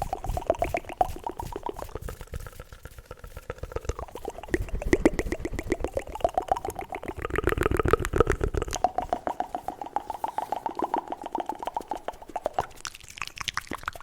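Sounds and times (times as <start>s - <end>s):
wet mouth clicks: 0.0s - 14.0s.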